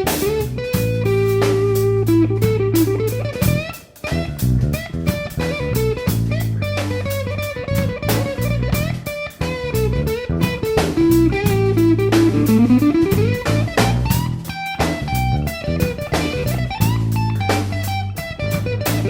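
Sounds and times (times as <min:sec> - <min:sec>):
blues music with electric guitar: 0:00.0 - 0:19.0
sliding guitar line: 0:00.0 - 0:19.0.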